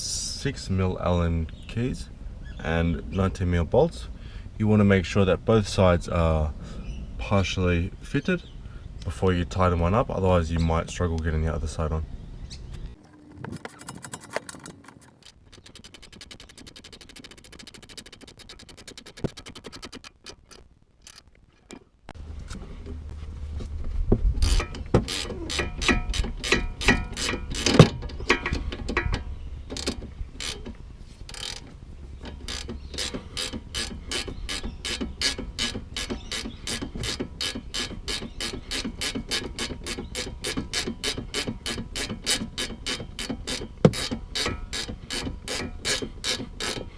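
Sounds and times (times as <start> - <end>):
hand ratchet clicking: 13.0 - 21.3, 24.4 - 28.6, 29.8 - 30.6, 31.3 - 31.6, 32.3 - 46.9.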